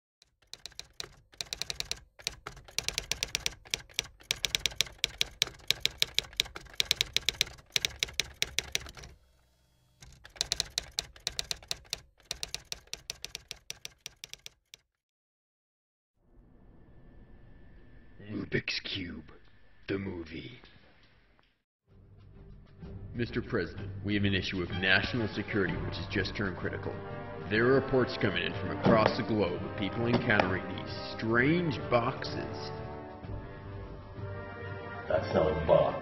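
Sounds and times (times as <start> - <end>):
rapid mechanical clicks: 0.2 - 9.4, 10.0 - 14.9.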